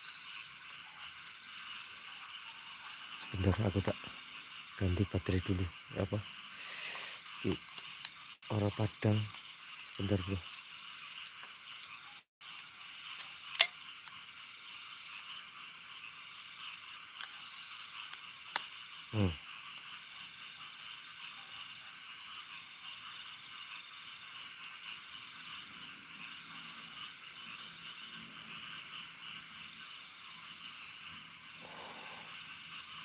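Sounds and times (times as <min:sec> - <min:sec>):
night insects chirping: 0:00.0 - 0:33.0
sharp click: 0:13.5 - 0:13.8.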